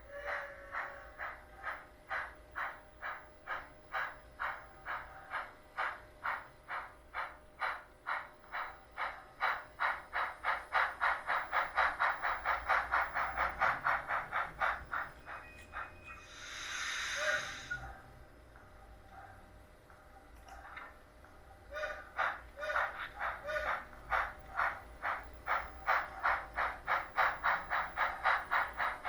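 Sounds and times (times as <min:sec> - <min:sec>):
model steam locomotive chuffs: 0:00.0 - 0:18.0, 0:20.6 - 0:29.0
steam hiss: 0:16.1 - 0:17.8, 0:21.8 - 0:29.0.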